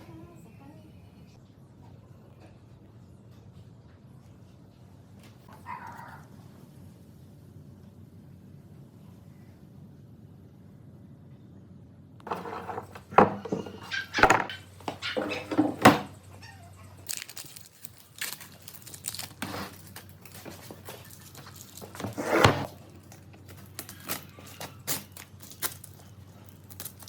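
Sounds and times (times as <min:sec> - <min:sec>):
handling scrapes: 0:12.2 - 0:16.3, 0:17.0 - 0:27.0.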